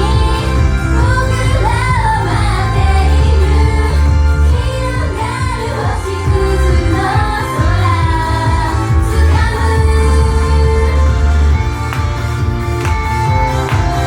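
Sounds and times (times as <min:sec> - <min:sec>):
female voices singing pop song: 0:00.0 - 0:11.9
backing track with heavy bass: 0:00.0 - 0:14.0.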